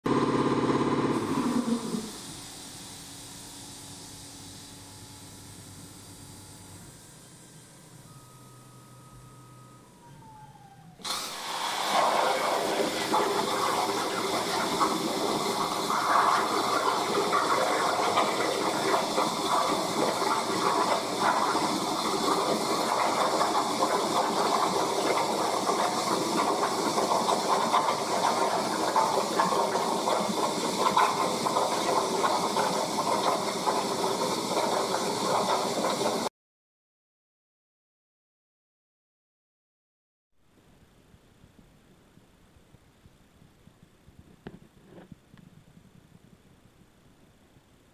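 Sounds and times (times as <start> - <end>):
plasma cutter hissing: 1.1 - 7.6, 11.0 - 36.2.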